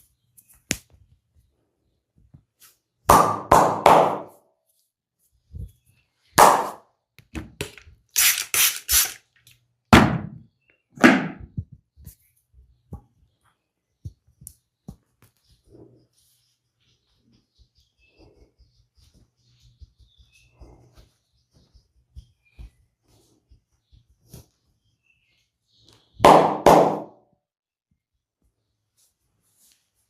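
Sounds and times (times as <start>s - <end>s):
massage slaps and thuds: 3.1s - 4.4s, 10.0s - 11.8s, 26.2s - 27.2s.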